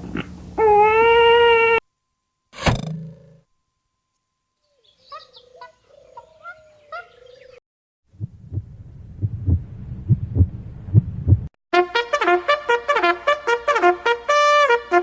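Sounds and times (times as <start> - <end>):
short chirping calls: 4.6 - 7.6
heartbeat thumps: 8.1 - 11.6.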